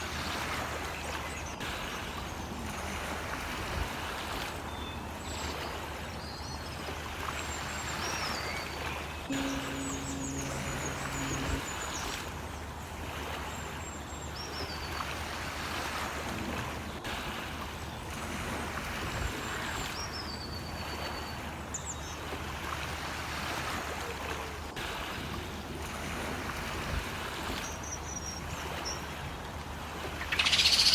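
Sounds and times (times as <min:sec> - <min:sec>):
sea water rushing: 0:00.0 - 0:30.9
low engine hum: 0:09.1 - 0:15.0
high bird chirps: 0:30.3 - 0:30.9.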